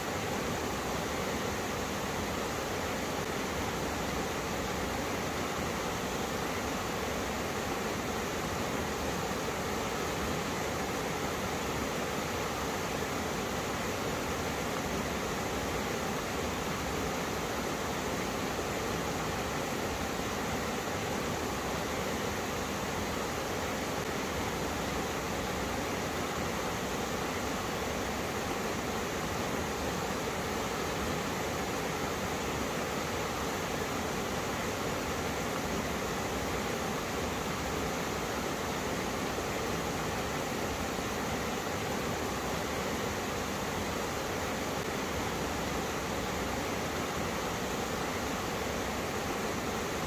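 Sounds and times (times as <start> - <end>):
stream rushing over rocks: 0.0 - 50.0.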